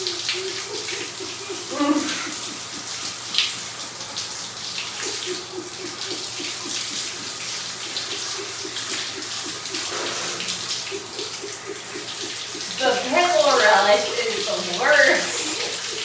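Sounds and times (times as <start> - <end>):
water running: 0.0 - 16.0.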